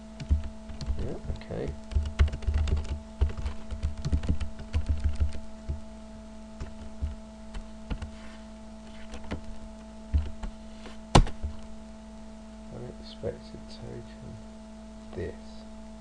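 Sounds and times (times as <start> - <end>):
steady electrical hum: 0.0 - 16.0
typing on computer keyboard: 0.2 - 1.0, 1.9 - 5.8.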